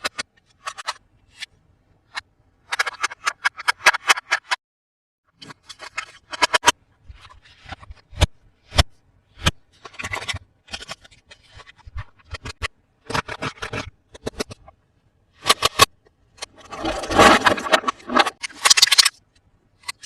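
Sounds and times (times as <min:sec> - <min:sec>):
scraping and rustling: 0:16.4 - 0:19.2.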